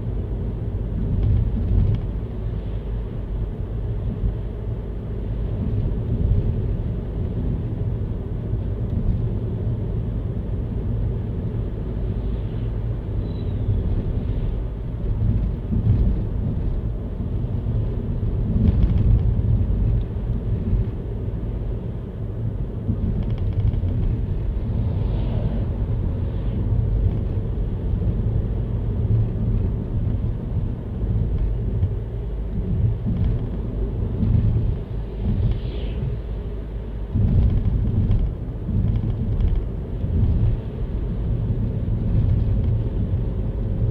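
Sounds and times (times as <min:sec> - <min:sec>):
car tyre and engine rumble: 0:00.0 - 0:43.9.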